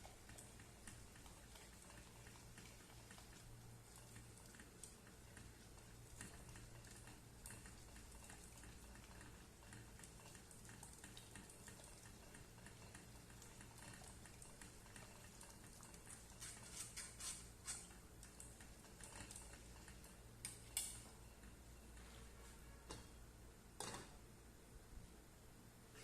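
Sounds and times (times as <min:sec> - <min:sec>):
low steady hum: 0:00.0 - 0:26.0
kitchen clicks and taps: 0:23.8 - 0:24.1.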